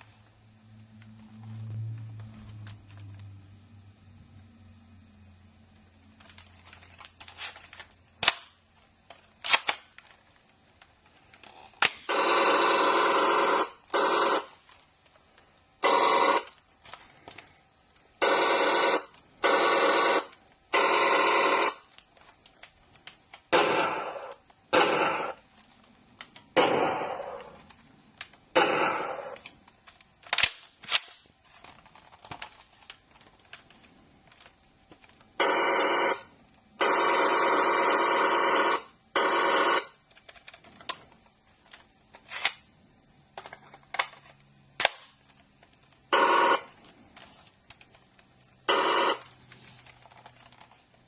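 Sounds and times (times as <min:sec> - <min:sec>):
electronic rifle fire bursts: 0:12.0 - 0:14.5, 0:18.2 - 0:21.8, 0:46.1 - 0:46.7, 0:48.7 - 0:49.3.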